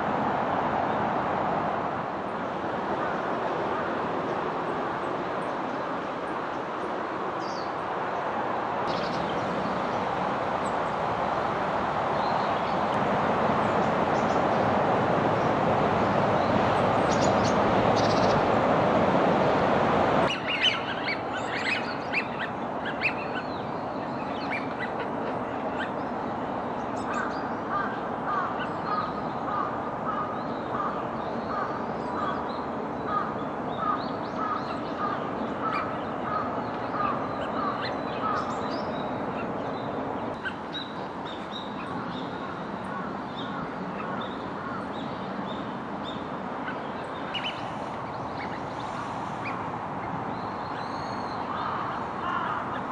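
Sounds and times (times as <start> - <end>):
steady rushing noise: 0.0 - 52.9
wild birds calling: 20.2 - 52.9.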